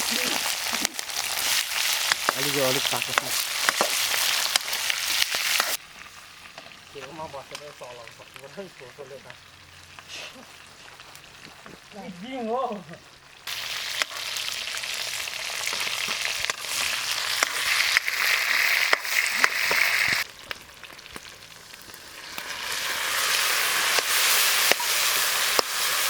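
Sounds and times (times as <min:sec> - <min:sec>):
oil popping: 0:00.0 - 0:08.2, 0:13.5 - 0:26.0
food sizzling in hot oil: 0:00.0 - 0:26.0.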